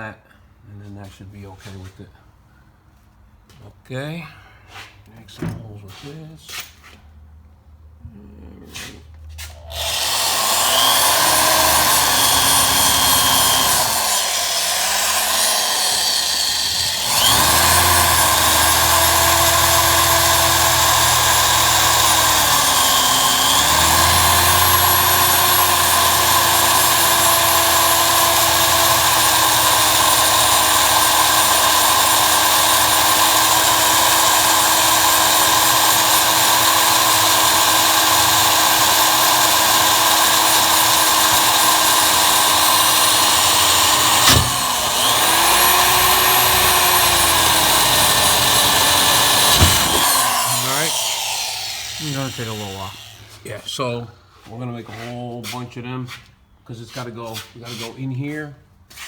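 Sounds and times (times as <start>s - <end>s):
electric drill boring through steel: 9.6s - 53.4s.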